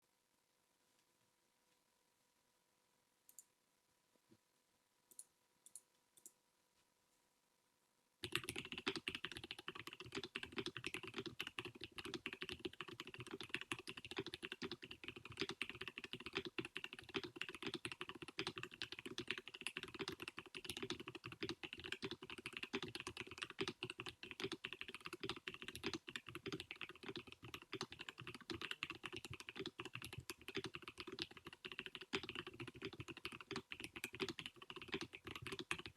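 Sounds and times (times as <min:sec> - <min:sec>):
typing on mechanical keyboard: 0:08.2 - 0:35.9.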